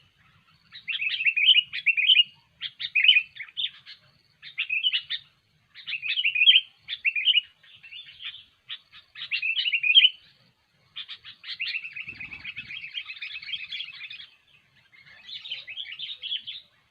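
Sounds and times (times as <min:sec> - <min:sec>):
bulbul singing and chattering: 0:10.9 - 0:16.9.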